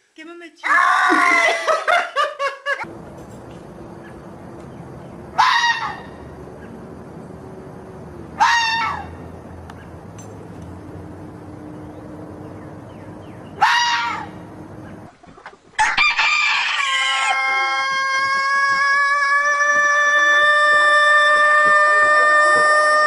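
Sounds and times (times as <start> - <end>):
rooster crowing: 0.7 - 1.9, 5.3 - 9.4, 13.5 - 14.8, 15.8 - 23.0.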